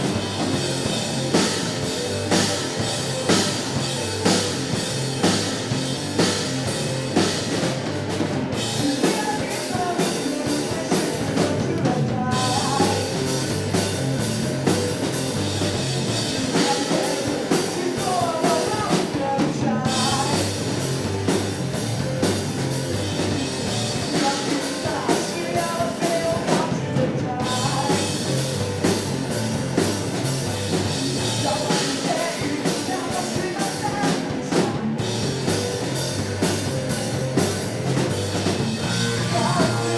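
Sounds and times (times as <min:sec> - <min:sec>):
bass and guitars: 0:00.0 - 0:39.9
drum kit beat: 0:00.0 - 0:39.9
vocalist singing: 0:08.5 - 0:13.8, 0:15.6 - 0:21.2, 0:23.6 - 0:28.5, 0:31.2 - 0:35.2, 0:38.6 - 0:39.9.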